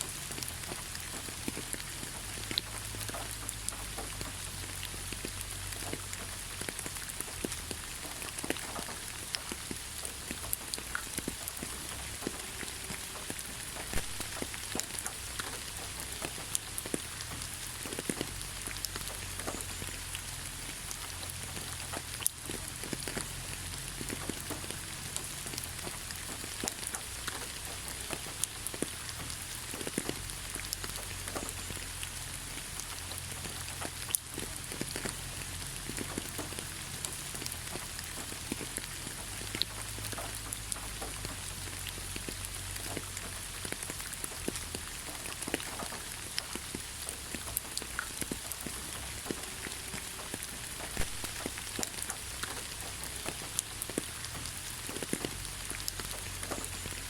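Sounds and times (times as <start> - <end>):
rain falling on leaves: 0.0 - 57.0.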